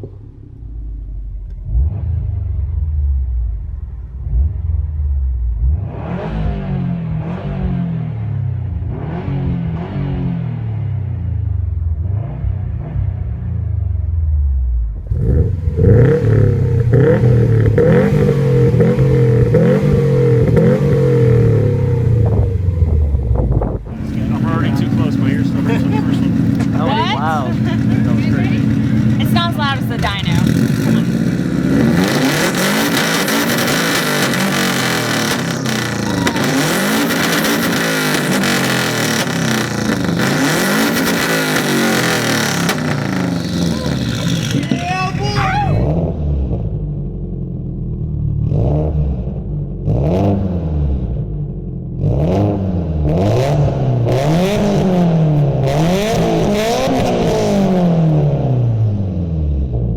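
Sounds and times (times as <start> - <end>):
exhaust pops: 0.0 - 1.8, 15.0 - 46.9
car engine revving hard: 1.6 - 2.9, 5.6 - 10.8, 15.0 - 23.2, 23.8 - 46.8, 48.4 - 51.2, 52.0 - 59.3.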